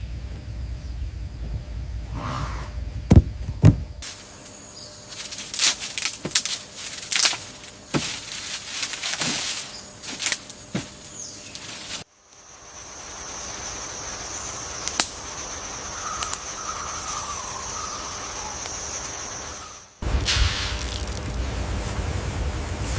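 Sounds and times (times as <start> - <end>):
low background rumble: 0.0 - 4.0, 19.4 - 22.9
rustling: 4.0 - 12.0.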